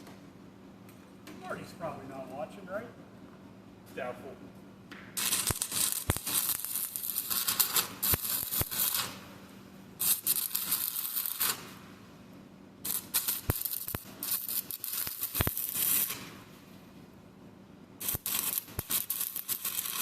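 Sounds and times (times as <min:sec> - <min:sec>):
welding arc crackling: 0:05.2 - 0:11.9, 0:12.8 - 0:16.5, 0:18.0 - 0:20.0.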